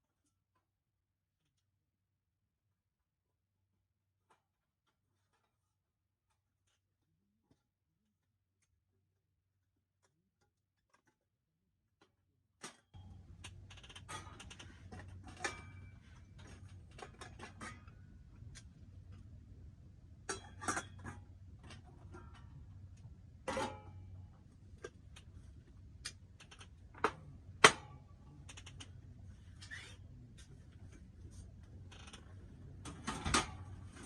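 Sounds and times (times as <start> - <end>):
small clicks and knocks of handling: 12.0 - 19.3, 24.3 - 29.7.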